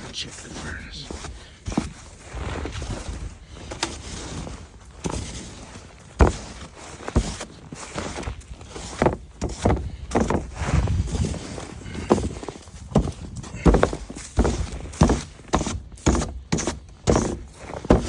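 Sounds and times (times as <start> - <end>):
scraping: 0.0 - 18.0
knocks and thumps: 12.0 - 18.0.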